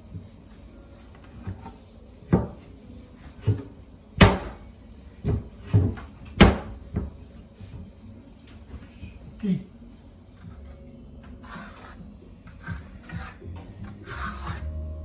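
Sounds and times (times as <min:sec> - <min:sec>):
wooden boards knocking: 0:05.8 - 0:07.1.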